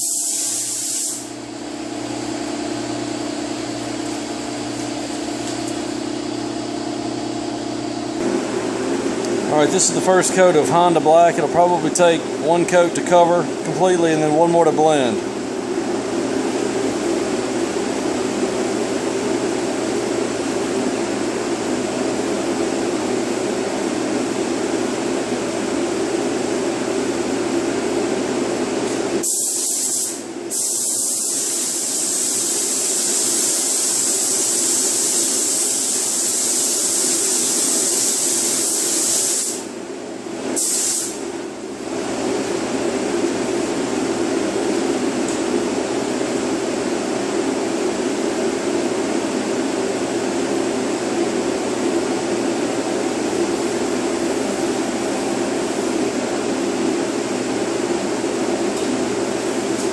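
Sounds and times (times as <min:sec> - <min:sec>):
paint spray gun hissing: 0:00.0 - 0:01.3, 0:29.2 - 0:39.7, 0:40.6 - 0:41.2
fan-like drone: 0:39.4 - 0:59.9.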